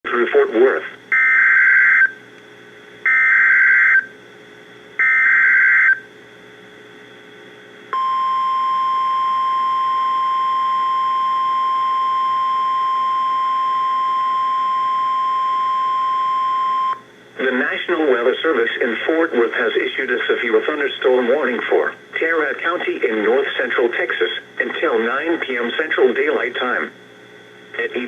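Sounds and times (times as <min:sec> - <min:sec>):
steady warning alarm tone: 0:03.1 - 0:04.1, 0:05.0 - 0:06.0, 0:08.0 - 0:17.0.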